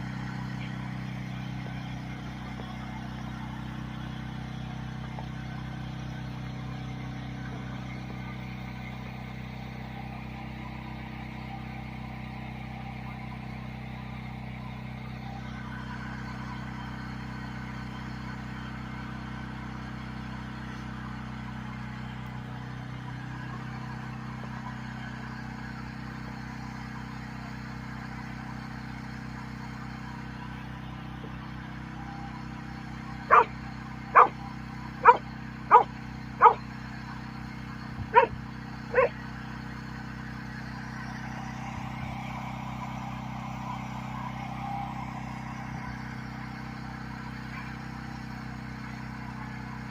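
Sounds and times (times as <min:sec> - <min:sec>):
steady low hum: 0:33.2 - 0:39.2
dog barking: 0:33.3 - 0:33.5, 0:34.1 - 0:34.4, 0:35.0 - 0:36.6, 0:38.1 - 0:39.2.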